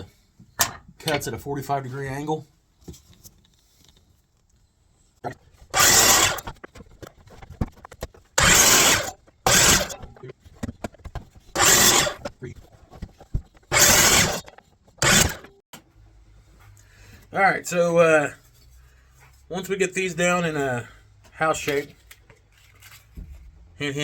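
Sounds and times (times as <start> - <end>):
miter saw cutting wood: 5.7 - 6.7, 8.4 - 10.3, 11.6 - 12.4, 13.7 - 15.6.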